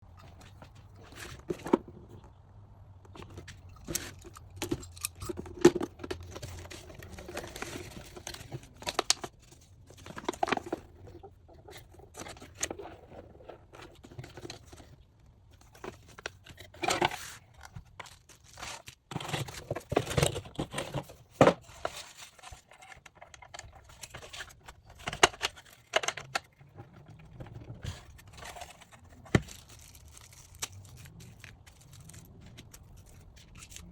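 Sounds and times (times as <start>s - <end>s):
plastic parts clicking and knocking: 3.0s - 9.4s, 15.6s - 33.9s
packaging rustling and tearing: 3.6s - 9.4s, 15.7s - 33.9s.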